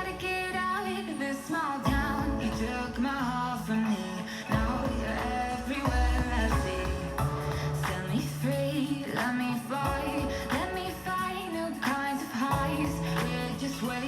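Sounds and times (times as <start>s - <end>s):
song through a speaker: 0.0s - 14.0s
heavy bass notes: 1.9s - 3.5s, 4.5s - 8.8s.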